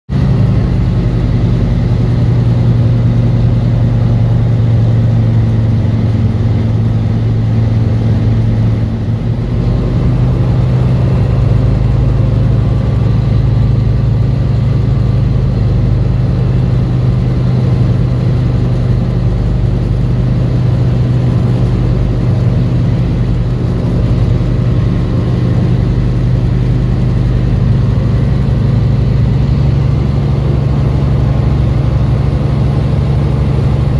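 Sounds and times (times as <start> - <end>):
light aircraft engine drone: 0.1 - 33.9.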